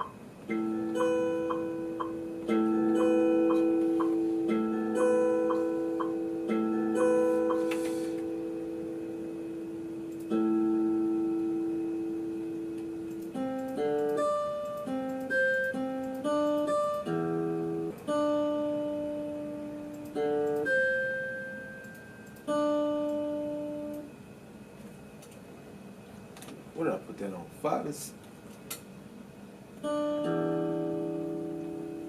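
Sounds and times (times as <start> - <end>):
plucked string notes: 0.0 - 21.6, 29.8 - 32.0.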